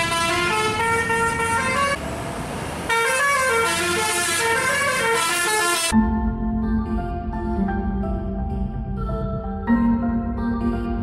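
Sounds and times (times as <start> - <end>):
multi-tone air horn tune: 0.0 - 2.0, 2.9 - 6.0
rumbling vehicle noise: 0.0 - 11.0.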